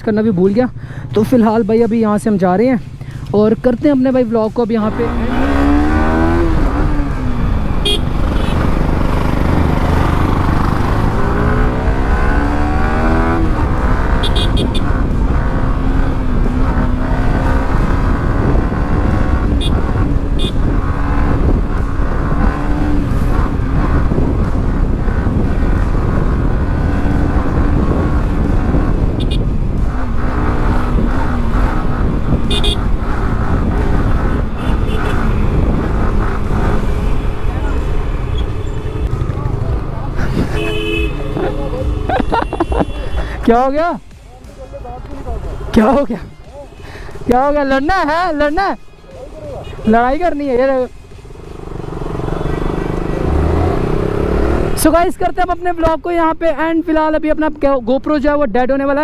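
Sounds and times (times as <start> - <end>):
motorcycle engine revving: 4.8 - 55.1
wind noise: 4.9 - 43.6
horn beeps: 7.5 - 9.5, 14.1 - 14.9, 32.4 - 32.9, 40.3 - 43.4, 51.8 - 54.0.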